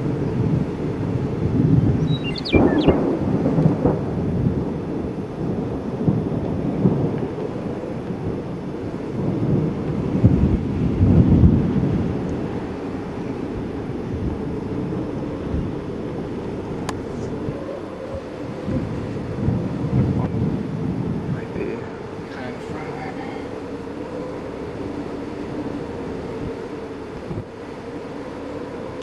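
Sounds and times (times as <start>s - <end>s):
gusting storm wind: 0.0s - 29.0s
low thunder rumble: 0.0s - 29.0s
high bird chirps: 2.0s - 3.1s.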